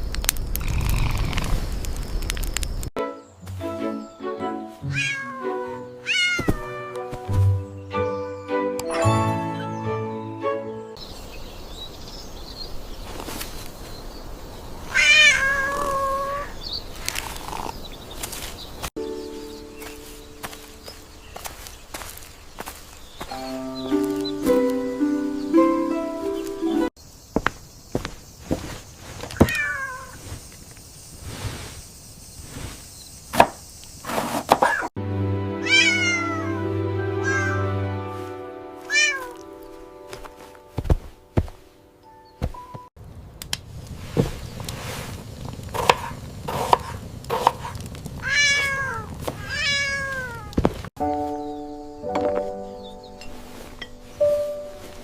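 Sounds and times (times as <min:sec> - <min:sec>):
background music held chord: 0:03.0 - 0:04.9, 0:07.0 - 0:11.0, 0:19.0 - 0:21.0, 0:23.3 - 0:26.9, 0:35.0 - 0:42.8, 0:51.0 - 0:55.0
cat meowing: 0:04.9 - 0:07.1, 0:14.9 - 0:16.6, 0:29.4 - 0:30.2, 0:35.6 - 0:36.6, 0:37.2 - 0:37.6, 0:38.9 - 0:39.4, 0:48.2 - 0:50.6
background hiss: 0:11.0 - 0:34.4, 0:43.0 - 0:55.0.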